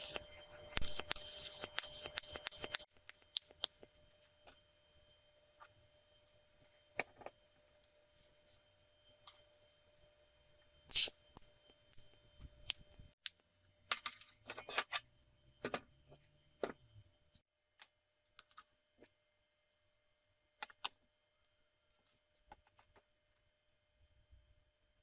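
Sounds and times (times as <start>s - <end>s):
metal parts and tools clinking: 13.6s - 15.0s.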